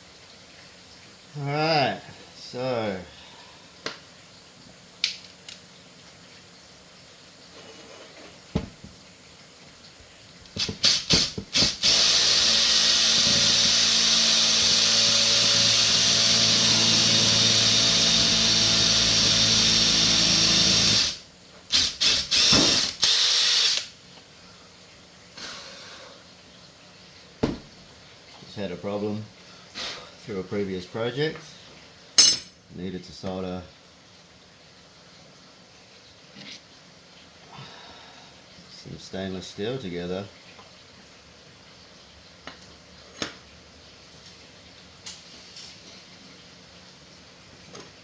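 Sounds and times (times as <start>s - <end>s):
power drill motor whining: 10.7s - 23.9s.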